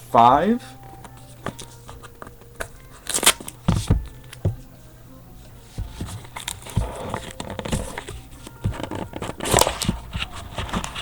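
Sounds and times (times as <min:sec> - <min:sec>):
plastic wrapping crinkling and tearing: 0:00.8 - 0:04.4, 0:05.9 - 0:11.0.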